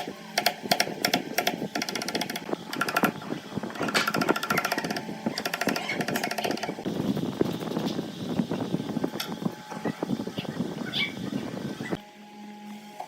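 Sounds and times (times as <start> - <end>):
power tool rattling: 0.0 - 3.2, 3.8 - 6.9.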